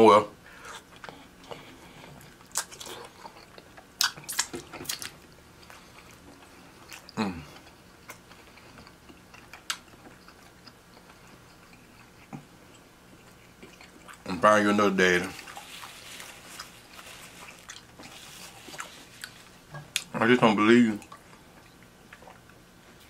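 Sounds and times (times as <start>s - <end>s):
chewing and biting: 0.8s - 14.4s, 15.2s - 20.1s
wet mouth clicks and smacks: 4.0s - 5.2s.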